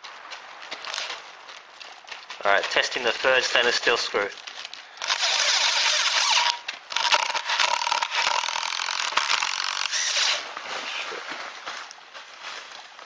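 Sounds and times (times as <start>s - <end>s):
power driver motor: 5.0s - 10.4s
screw grinding into wood: 5.0s - 10.5s.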